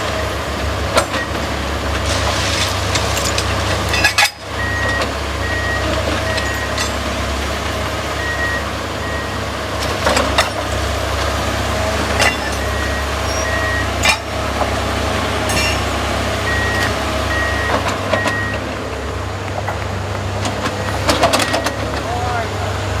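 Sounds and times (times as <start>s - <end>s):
crane engine running: 0.0s - 23.0s
backup alarm beeping: 8.2s - 9.5s, 12.2s - 14.1s, 16.4s - 18.7s.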